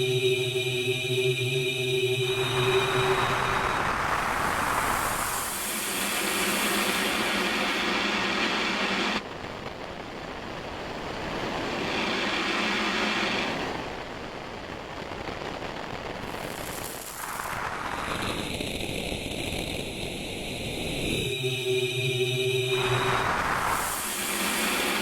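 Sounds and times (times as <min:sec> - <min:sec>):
synthesized noise washes: 0:00.0 - 0:09.2, 0:16.3 - 0:25.0.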